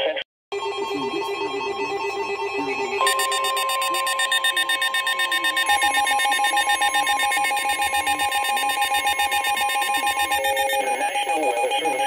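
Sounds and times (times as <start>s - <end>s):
fluttering electronic alert tones: 2.0s - 12.0s
person reading a warning: 3.0s - 12.0s.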